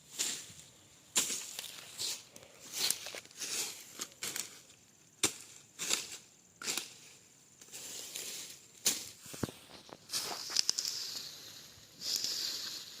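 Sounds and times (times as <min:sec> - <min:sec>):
machete chopping through brush: 0:08.8 - 0:09.2.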